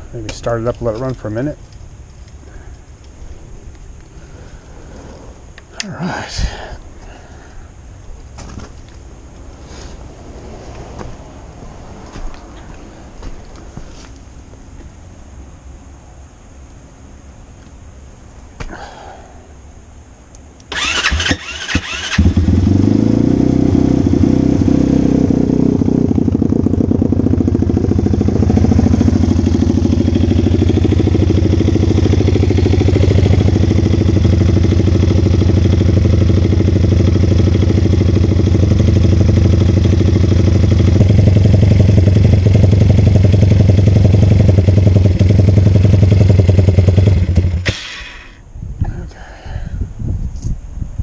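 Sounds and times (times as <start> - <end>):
motorcycle engine idling: 0.0 - 48.4
motorcycle engine cranking: 20.7 - 23.1.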